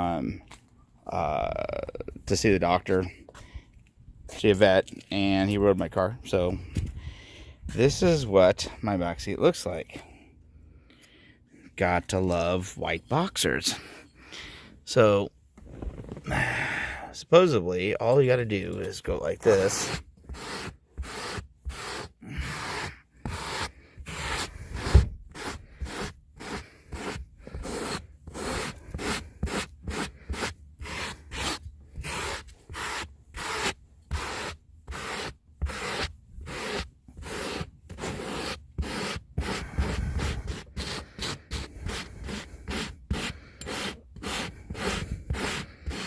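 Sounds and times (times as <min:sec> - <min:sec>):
stone rubbing over fabric upholstery: 0:15.6 - 0:16.6, 0:19.4 - 0:46.0.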